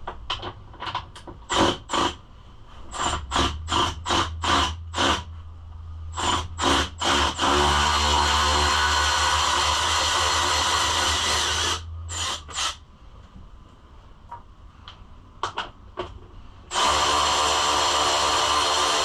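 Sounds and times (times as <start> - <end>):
power tool motor running: 6.2 - 12.8, 16.7 - 19.0.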